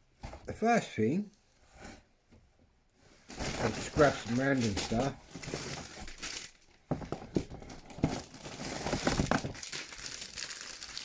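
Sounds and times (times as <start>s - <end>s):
packaging crinkling and rustling: 3.3s - 11.0s.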